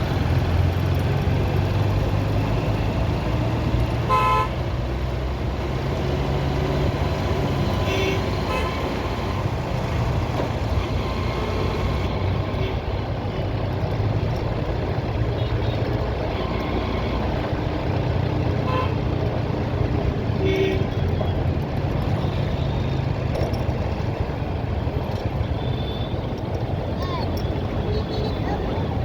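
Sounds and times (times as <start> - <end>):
vehicle road noise: 0.0 - 29.0
vehicle horn toots: 4.0 - 4.6, 7.7 - 8.9.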